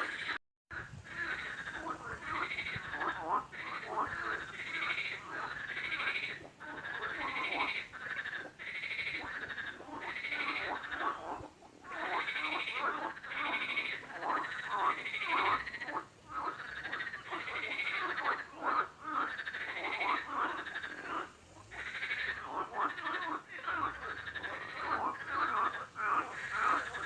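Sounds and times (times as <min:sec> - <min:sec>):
frogs croaking: 0:00.0 - 0:27.0.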